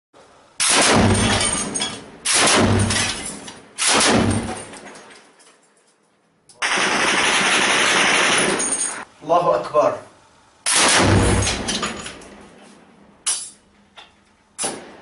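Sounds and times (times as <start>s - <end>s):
machine-gun fire bursts: 0.6s - 3.0s, 3.8s - 4.5s, 6.6s - 8.8s, 10.7s - 11.6s.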